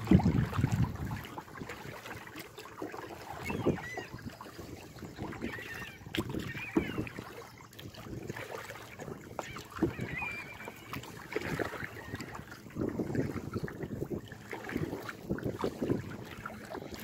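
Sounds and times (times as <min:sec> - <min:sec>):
paddle splashing in water: 0:00.0 - 0:17.0
wavering bird calls: 0:03.3 - 0:04.3, 0:05.3 - 0:07.6, 0:09.3 - 0:12.4.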